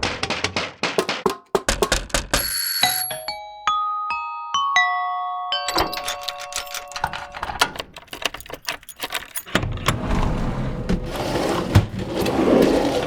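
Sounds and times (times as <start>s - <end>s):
door hardware rattling clicks: 5.7s - 10.0s
rumbling door scrape: 9.5s - 13.0s.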